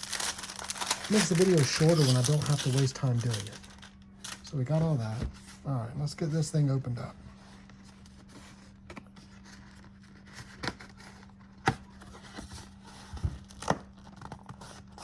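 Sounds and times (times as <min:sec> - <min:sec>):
knife cutting plastic wrap: 0:00.0 - 0:03.7
plastic wrap crinkling: 0:00.0 - 0:04.6.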